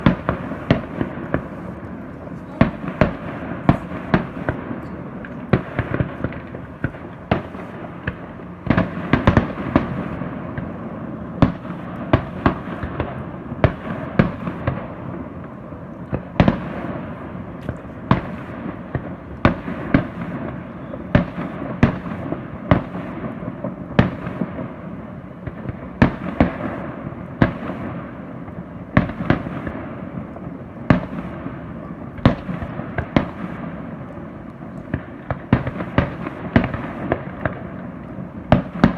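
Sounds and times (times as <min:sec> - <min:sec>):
din of firework bursts: 0:00.0 - 0:38.9
fireworks bangs: 0:00.0 - 0:38.9.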